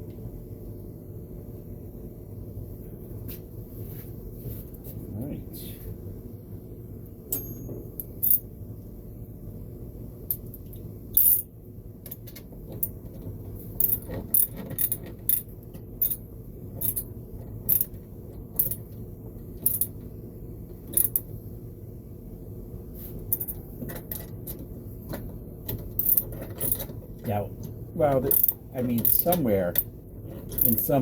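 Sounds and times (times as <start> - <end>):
metallic tool clicks and clinks: 7.3 - 8.4, 19.7 - 19.9, 30.5 - 30.8.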